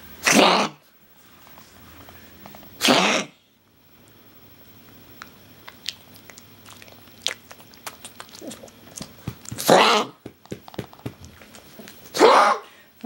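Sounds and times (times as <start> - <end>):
dog coughing: 0.2 - 0.8, 2.8 - 3.4, 8.1 - 10.2, 12.1 - 12.7
clicking throat sounds: 5.2 - 12.5.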